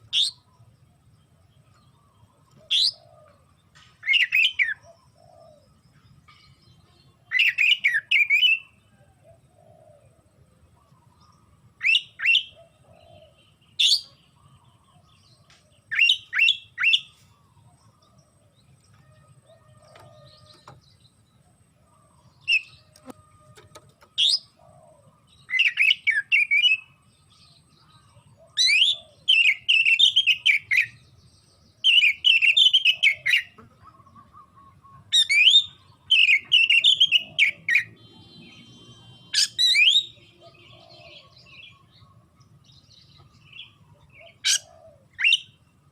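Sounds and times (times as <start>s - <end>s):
bird singing whistles and chatter: 0.0s - 0.5s, 4.0s - 4.9s, 7.3s - 8.7s, 11.8s - 12.6s, 31.8s - 41.4s, 44.3s - 45.6s.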